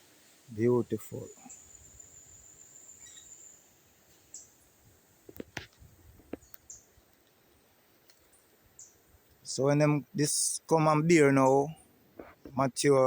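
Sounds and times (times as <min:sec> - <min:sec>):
high insect tone: 0:00.6 - 0:07.0.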